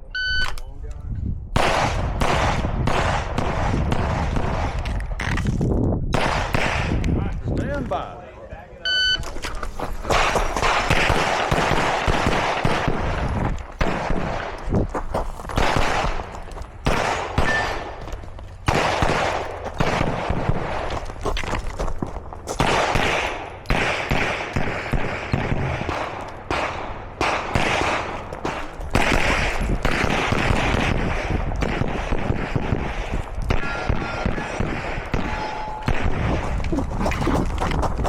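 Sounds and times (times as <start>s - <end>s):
pistol shots with echo: 1.6s - 4.8s, 6.1s - 7.1s, 10.1s - 14.7s, 15.5s - 21.0s, 22.5s - 36.6s
steady low rumble: 9.9s - 38.0s.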